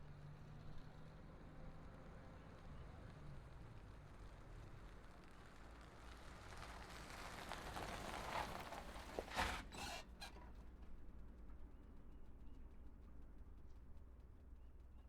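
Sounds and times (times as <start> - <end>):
car engine and tyres: 1.6 - 10.3.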